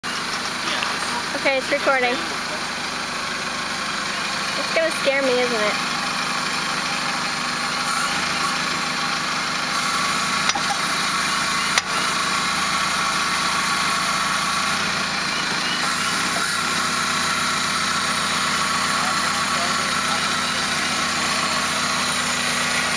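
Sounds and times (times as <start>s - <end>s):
car engine idling: 0.0s - 22.9s
sharp engine clunks: 10.2s - 22.9s.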